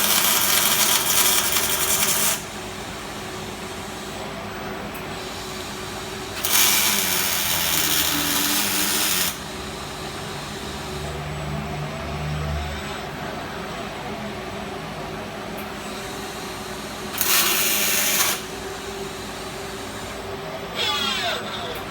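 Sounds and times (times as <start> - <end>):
welding arc hissing crackle: 0.0 - 4.2, 5.1 - 10.9, 16.0 - 20.2
low machine hum: 0.0 - 21.9.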